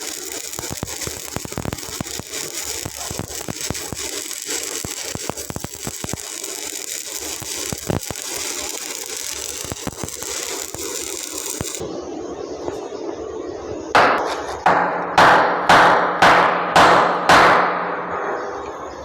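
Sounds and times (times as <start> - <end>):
sharp welding pops: 0.0 - 11.8, 14.0 - 18.3
welding arc crackling: 0.0 - 11.8.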